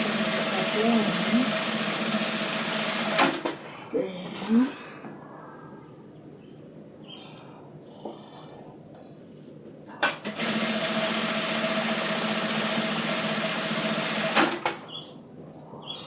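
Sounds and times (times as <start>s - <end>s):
sewing machine clicks: 0.0s - 3.5s, 10.0s - 14.8s
sewing machine running: 0.0s - 3.5s, 10.2s - 14.7s.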